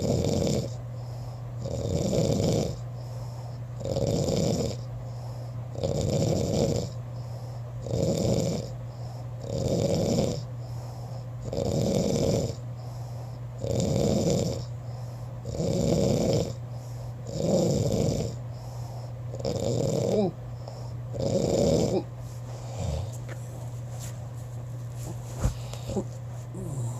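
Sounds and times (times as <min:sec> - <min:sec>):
snoring: 0:00.0 - 0:00.8, 0:01.6 - 0:02.8, 0:03.8 - 0:04.9, 0:05.7 - 0:07.0, 0:07.8 - 0:08.8, 0:09.4 - 0:10.5, 0:11.1 - 0:12.6, 0:13.6 - 0:14.7, 0:15.4 - 0:16.6, 0:17.2 - 0:18.4, 0:19.0 - 0:23.3, 0:25.4 - 0:26.9
steady low hum: 0:00.0 - 0:26.9.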